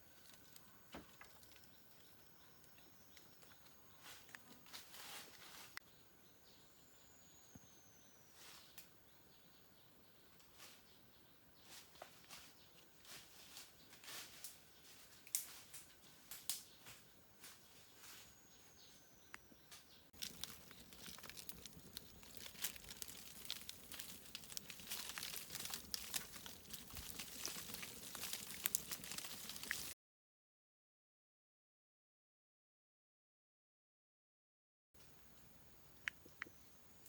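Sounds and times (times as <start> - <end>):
dry material crackling: 20.2 - 30.0.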